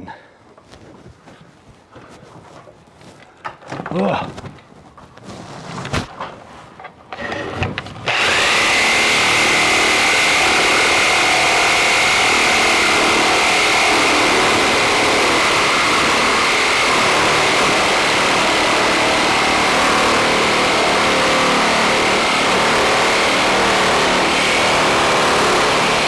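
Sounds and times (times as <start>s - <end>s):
power saw cutting wood siding: 6.9s - 26.0s.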